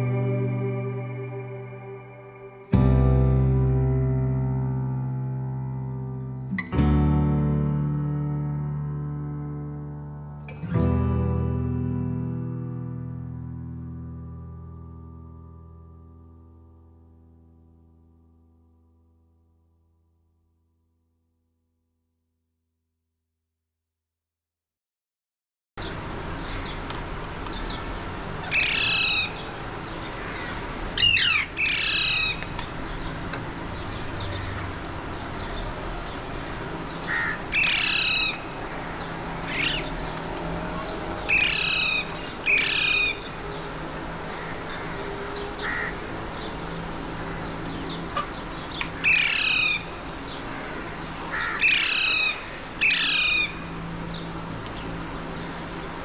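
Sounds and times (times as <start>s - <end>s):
parakeets squawking: 28.4s - 29.4s, 30.2s - 32.4s, 37.0s - 40.0s, 41.3s - 43.4s, 45.6s - 46.5s, 47.2s - 53.6s.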